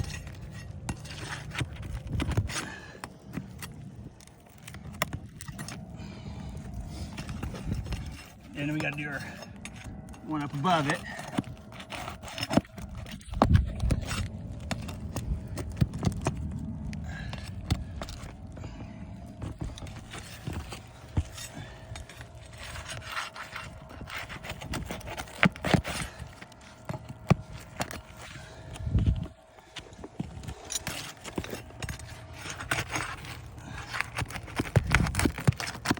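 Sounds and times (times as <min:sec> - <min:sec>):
pry bar scraping shingles: 0:00.0 - 0:35.9.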